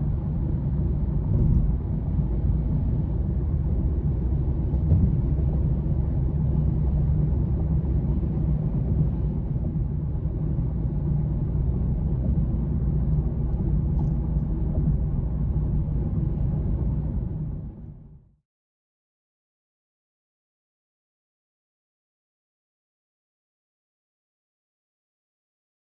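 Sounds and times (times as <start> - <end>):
low outdoor rumble: 0.0 - 18.4.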